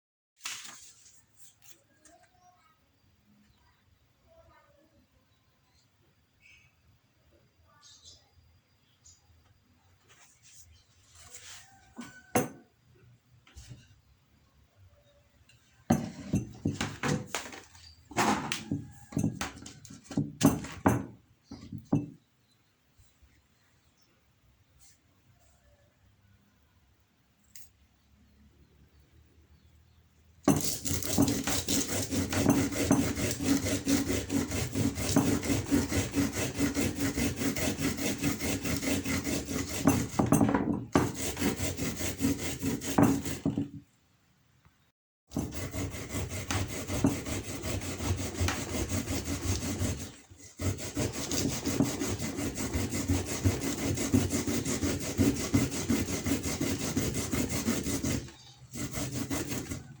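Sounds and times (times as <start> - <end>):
rasping hand grating: 30.5 - 43.7, 45.3 - 60.0.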